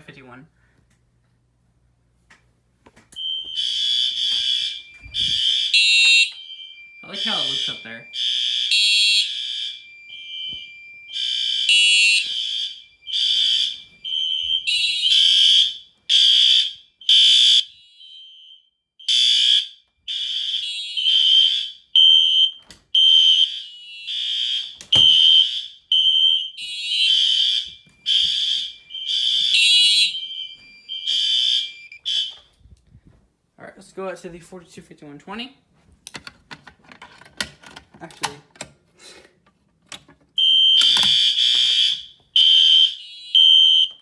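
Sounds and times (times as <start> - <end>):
electronic fire alarm horns: 3.2 - 32.6, 40.4 - 44.0.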